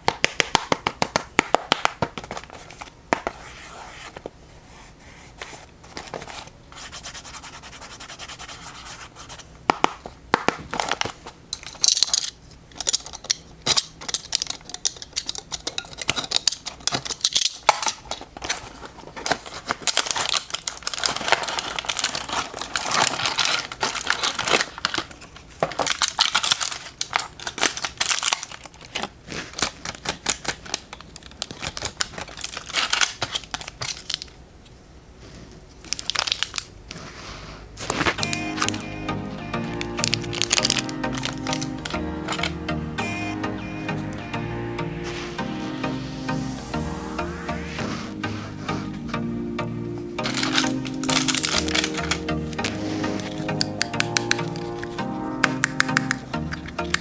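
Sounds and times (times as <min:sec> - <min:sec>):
packaging rustling and crinkling: 0:10.6 - 0:34.4, 0:35.3 - 0:37.2, 0:37.8 - 0:38.9, 0:39.7 - 0:42.5, 0:50.2 - 0:55.0.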